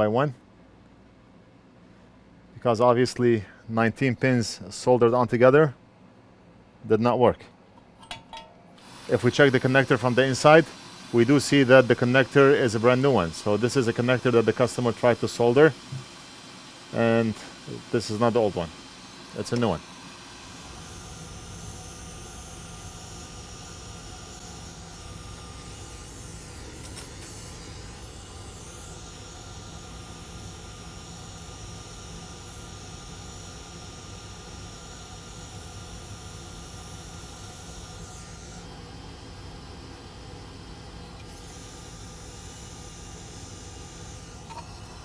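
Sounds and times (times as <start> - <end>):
faint hum: 0.0 - 45.0
air blowing hiss: 8.8 - 34.0
thin steady tones: 8.8 - 45.0.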